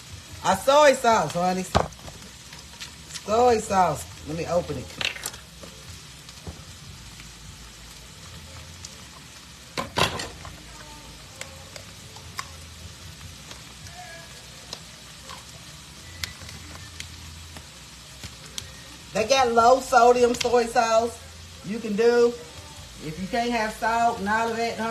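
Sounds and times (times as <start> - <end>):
food sizzling in a pan: 0.0 - 24.9.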